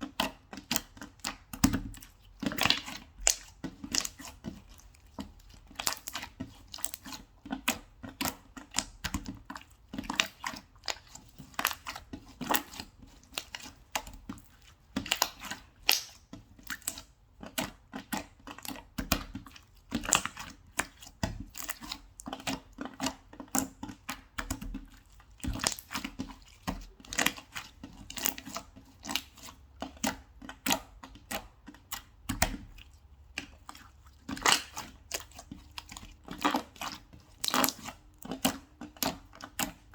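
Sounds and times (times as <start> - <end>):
slime crackling and popping: 15.0 - 17.0, 25.4 - 26.2, 34.3 - 39.9.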